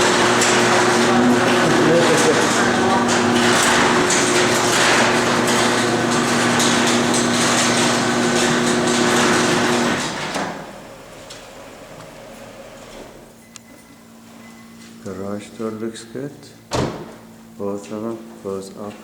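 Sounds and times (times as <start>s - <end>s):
garage door rattling on tracks: 0.0s - 11.0s
garage door motor hum: 0.0s - 13.4s.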